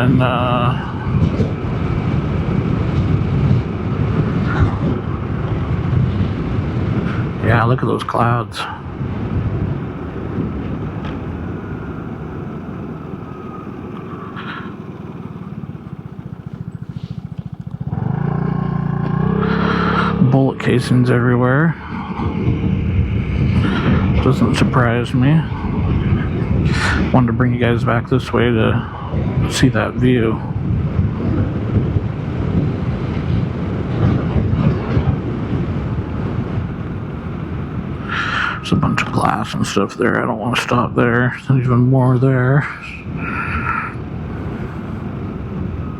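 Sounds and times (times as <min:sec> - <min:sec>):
wind rushing over microphone: 0:00.0 - 0:45.9
scooter engine running: 0:08.8 - 0:20.7.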